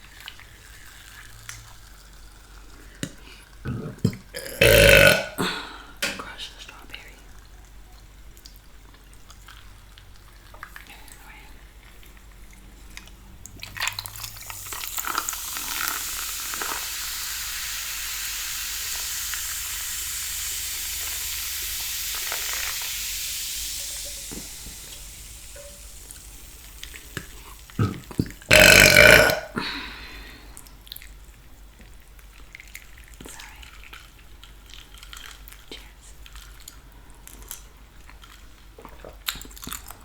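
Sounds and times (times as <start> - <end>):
soda fizzing: 0.0 - 5.5, 7.3 - 36.8
loud burp: 3.7 - 5.6, 27.8 - 29.8.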